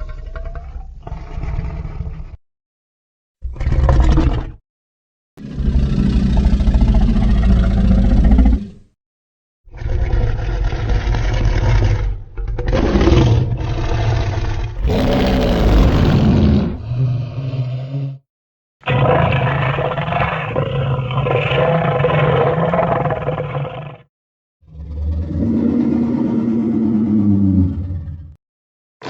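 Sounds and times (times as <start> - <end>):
monster roars: 14.8 - 18.2, 18.8 - 24.1.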